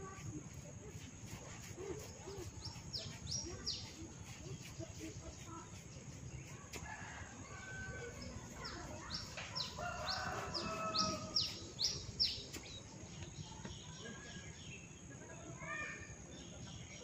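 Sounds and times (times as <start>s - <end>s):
birds calling: 0.9s - 12.9s.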